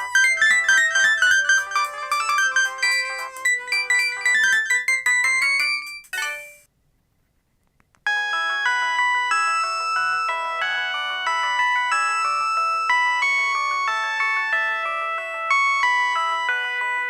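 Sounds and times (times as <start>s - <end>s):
held chiming tones: 0.0s - 6.7s
polyphonic ringtone melody: 0.0s - 6.7s, 8.1s - 17.0s.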